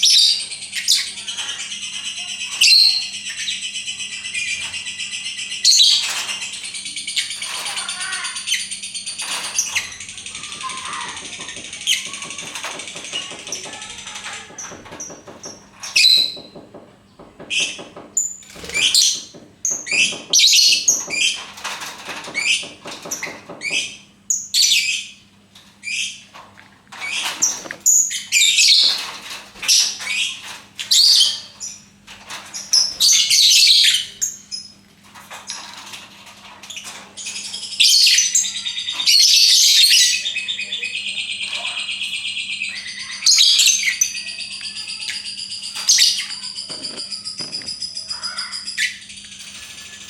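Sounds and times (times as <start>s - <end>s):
lovebird chirping and chattering: 0.0s - 16.6s, 36.7s - 50.0s.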